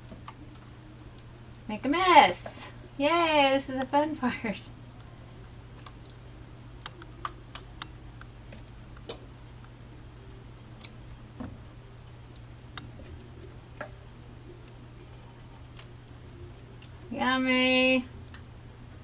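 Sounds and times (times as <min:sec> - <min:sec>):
steady low hum: 0:00.0 - 0:19.0
soft wet squishes: 0:04.7 - 0:17.1, 0:18.1 - 0:19.0.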